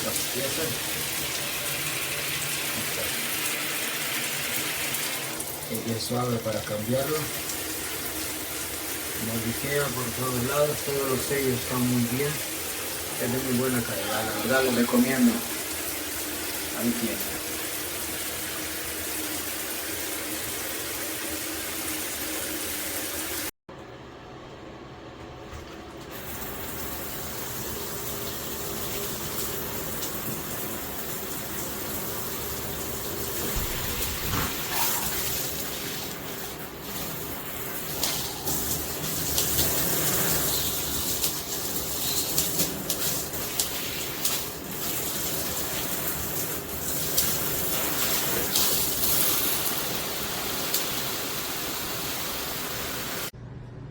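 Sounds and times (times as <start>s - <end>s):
shower water spraying: 0.0s - 23.5s, 26.1s - 53.3s
water splashing: 33.2s - 51.0s.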